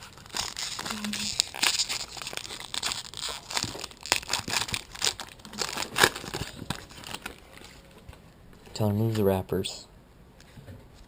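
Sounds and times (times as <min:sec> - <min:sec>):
card pack wrapper crinkling: 0:00.0 - 0:07.8.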